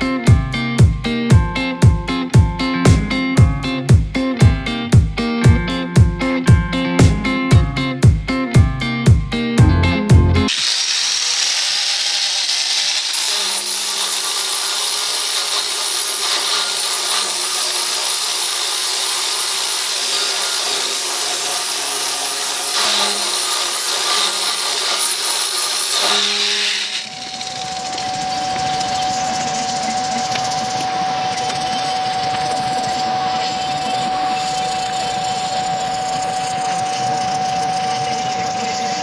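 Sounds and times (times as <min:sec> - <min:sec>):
grinder whine without load: 0:08.8 - 0:39.0
angle grinder grinding: 0:09.6 - 0:39.0.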